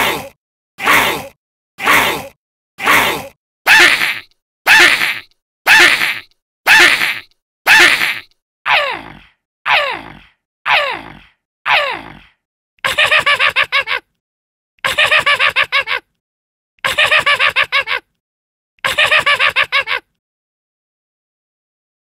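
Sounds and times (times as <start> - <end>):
monster stuttering cackle: 0.1 - 8.8, 12.8 - 14.1, 14.8 - 16.1, 16.8 - 18.1, 18.8 - 20.2.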